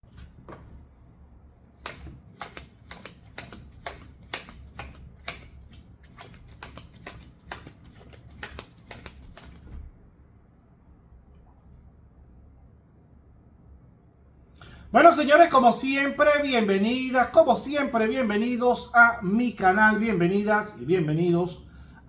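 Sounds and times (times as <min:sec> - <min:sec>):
cards being shuffled: 0:01.7 - 0:09.9.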